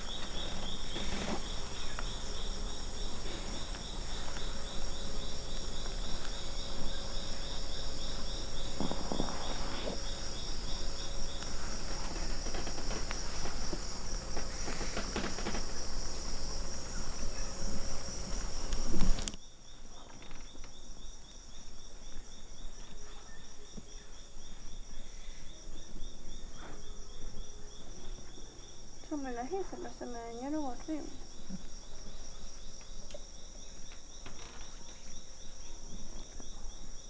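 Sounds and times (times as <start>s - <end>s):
soft rustles: 0.0s - 19.4s
insect chirping: 0.0s - 37.0s
insects buzzing: 0.0s - 37.0s.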